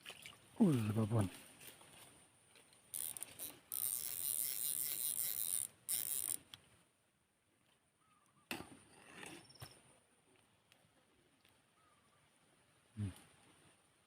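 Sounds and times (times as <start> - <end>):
fishing reel whirring: 2.9 - 6.5.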